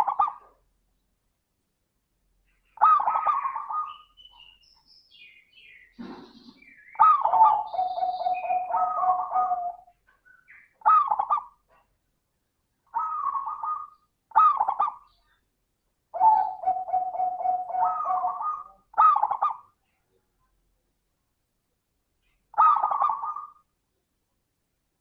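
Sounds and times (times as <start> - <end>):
dove cooing: 0.0 - 0.6, 2.8 - 4.1, 6.0 - 10.0, 10.8 - 11.7, 12.9 - 15.1, 16.1 - 19.7, 22.5 - 23.6.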